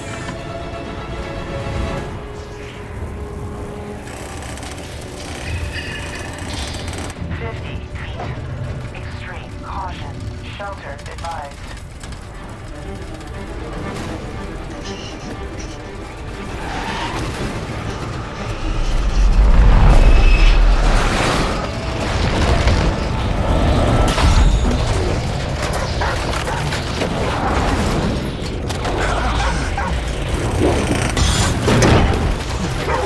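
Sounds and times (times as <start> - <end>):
rushing wind: 16.0 - 24.1
deep rumble: 17.4 - 25.6.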